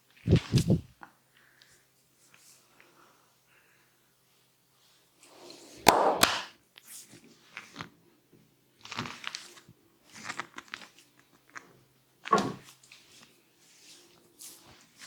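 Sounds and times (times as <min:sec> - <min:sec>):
hands rustling hair: 0:00.3 - 0:00.9.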